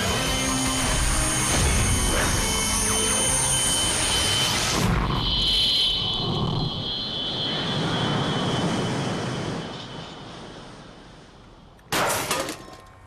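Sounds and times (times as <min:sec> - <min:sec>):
jet-like rushing noise: 0:07.3 - 0:11.4.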